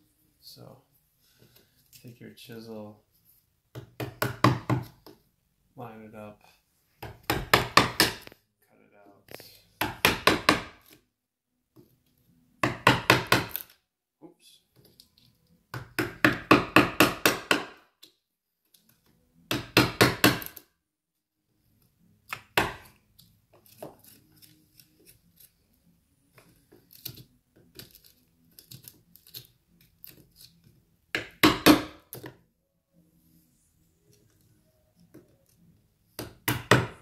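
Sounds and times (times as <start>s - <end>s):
chisel struck into wood: 3.7s - 4.9s, 7.0s - 8.3s, 9.8s - 10.8s, 12.6s - 13.6s, 15.7s - 17.8s, 19.5s - 20.6s, 22.3s - 22.9s, 31.1s - 32.3s, 36.2s - 37.0s
light tapping and chipping: 26.2s - 32.4s.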